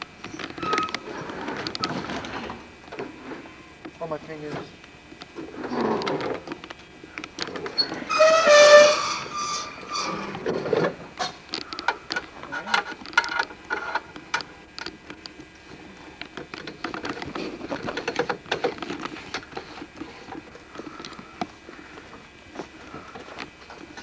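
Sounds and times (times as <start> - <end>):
hard parts clicking and clattering: 7.2 - 15.0.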